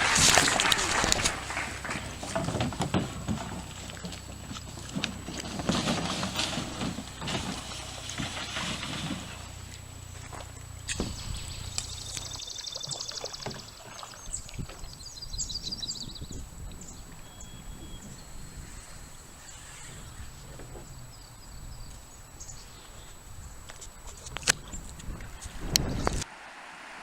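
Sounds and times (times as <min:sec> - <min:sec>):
low hum: 0:00.0 - 0:12.5
knocks and handling noise from boat: 0:00.0 - 0:15.0.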